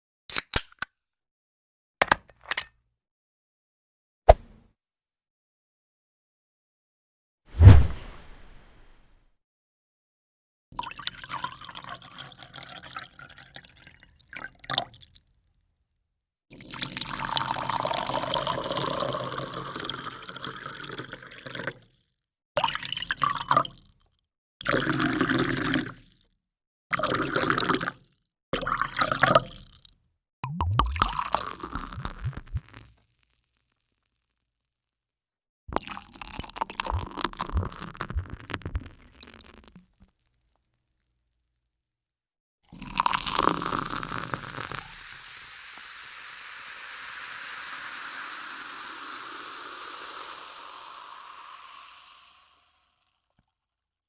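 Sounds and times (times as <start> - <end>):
water pouring: 10.8 - 15.0, 16.6 - 21.6, 30.4 - 32.9, 35.8 - 39.9, 42.7 - 53.2.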